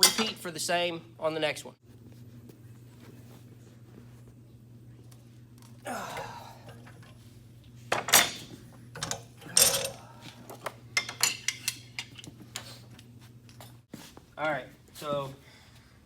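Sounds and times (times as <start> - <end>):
metal tools clinking and rattling: 0.0 - 0.4, 8.0 - 10.0, 11.0 - 12.3.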